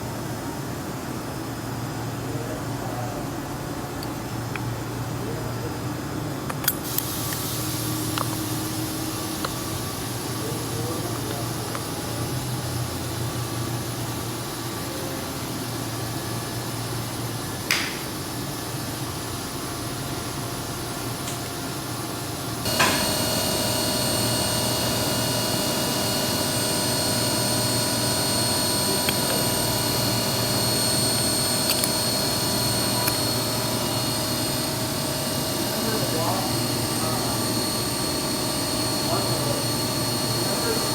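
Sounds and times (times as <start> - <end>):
sharp click: 17.7 - 18.0, 31.6 - 32.1
cnc machine humming: 21.7 - 40.9
high-pitched whining tones: 22.7 - 40.9.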